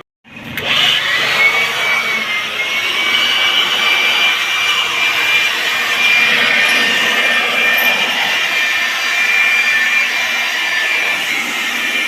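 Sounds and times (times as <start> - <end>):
pump motor whine: 0.3 - 12.0
pressure washer water jet hissing: 2.8 - 12.0.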